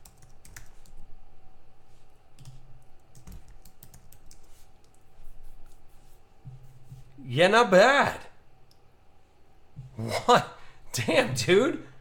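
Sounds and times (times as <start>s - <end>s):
typing on a computer keyboard: 0.0s - 1.0s, 2.4s - 5.0s.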